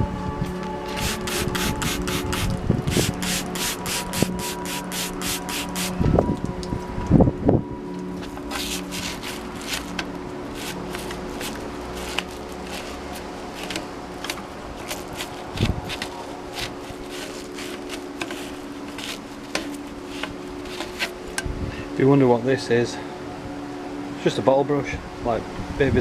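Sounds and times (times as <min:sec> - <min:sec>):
brush scrubbing a bicycle frame: 0:00.9 - 0:06.0, 0:08.2 - 0:21.4.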